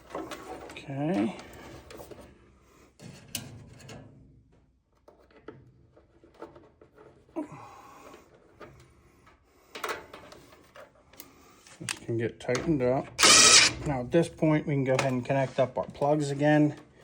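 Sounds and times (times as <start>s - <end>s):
sharp clicks: 13.2s - 13.8s.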